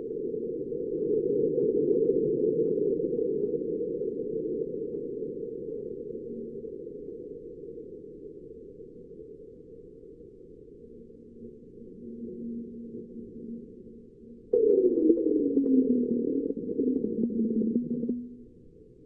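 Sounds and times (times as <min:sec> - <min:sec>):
faint crackles: 0:11.1 - 0:18.7
low muffled rumble: 0:12.1 - 0:18.6.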